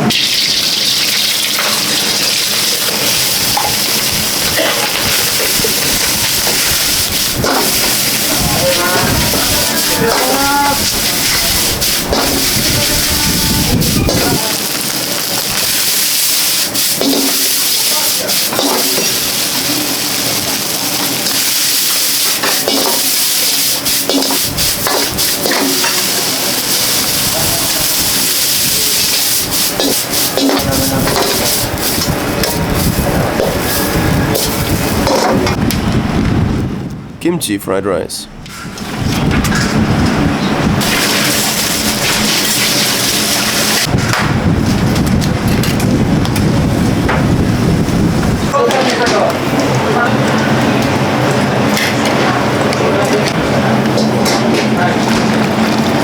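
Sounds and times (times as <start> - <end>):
rice sizzling in a wok: 0.1 - 35.4, 40.8 - 43.9
low rumbling roar: 2.7 - 16.1, 23.9 - 37.2, 38.3 - 56.0
utensils knocking: 3.0 - 13.3, 17.0 - 19.3, 22.3 - 23.2, 24.0 - 26.8, 29.0 - 32.6.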